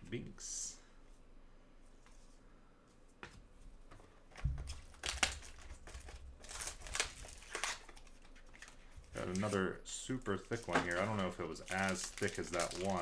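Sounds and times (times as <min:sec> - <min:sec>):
packaging crinkling and tearing: 0:04.6 - 0:09.6, 0:10.2 - 0:13.0.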